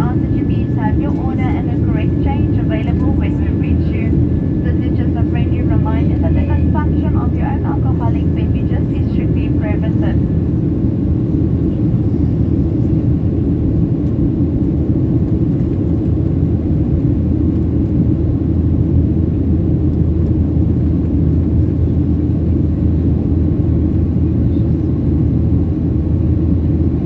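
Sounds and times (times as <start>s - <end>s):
airflow noise: 0.0s - 11.3s
airplane cabin engine drone: 0.0s - 27.0s.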